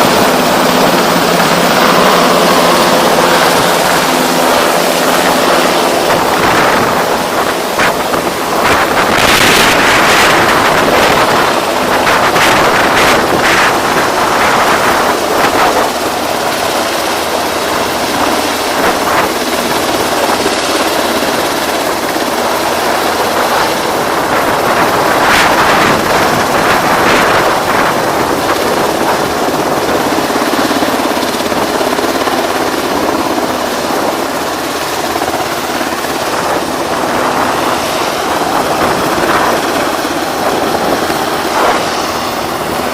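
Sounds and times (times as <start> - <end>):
wind buffeting microphone: 0.0 - 42.9.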